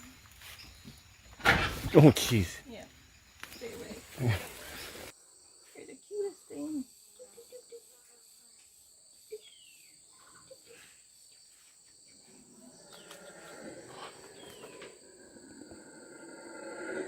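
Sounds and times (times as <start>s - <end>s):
insects droning: 0.0s - 17.0s.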